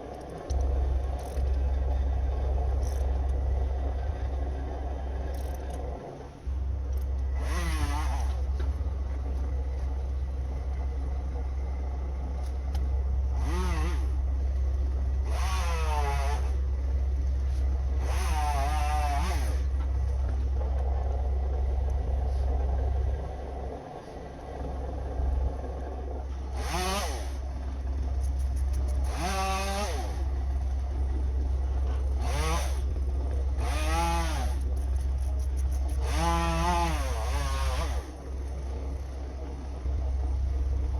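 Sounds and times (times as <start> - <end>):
low rumble: 0.0 - 15.4, 16.4 - 40.9
chainsaw revving: 7.4 - 8.4, 13.4 - 14.1, 15.2 - 16.6, 18.0 - 19.7, 26.4 - 27.5, 28.8 - 30.2, 32.2 - 32.9, 33.6 - 34.7, 36.0 - 38.1.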